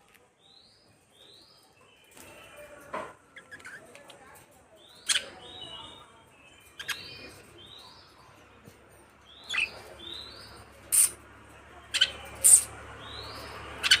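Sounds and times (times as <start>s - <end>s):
sharp bird calls: 4.8s - 8.0s, 9.3s - 11.2s, 11.8s - 14.0s
budgerigars chirping: 5.0s - 6.0s, 6.7s - 7.8s, 9.3s - 11.1s, 11.9s - 14.0s.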